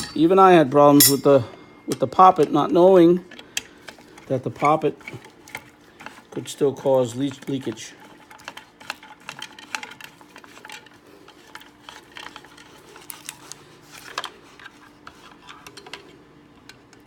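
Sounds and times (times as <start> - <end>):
metal tools clicking and clinking: 0.0 - 2.7.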